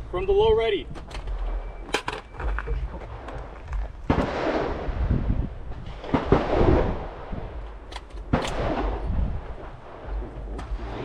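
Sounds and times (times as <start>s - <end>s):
gunshots with echo: 4.0s - 5.4s, 6.0s - 7.6s, 8.2s - 11.0s.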